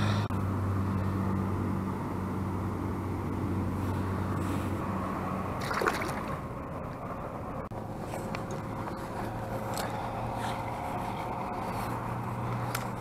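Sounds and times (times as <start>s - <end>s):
water sounds: 5.4s - 7.0s.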